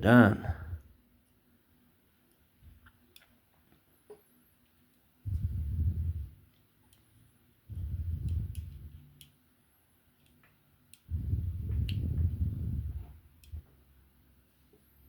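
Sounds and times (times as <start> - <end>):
dull low handling noise: 4.9 - 7.0, 7.6 - 9.3, 10.3 - 15.0.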